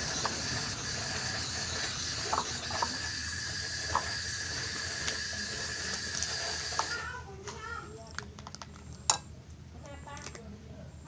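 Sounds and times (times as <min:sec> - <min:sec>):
steady hissing: 0:00.0 - 0:07.3.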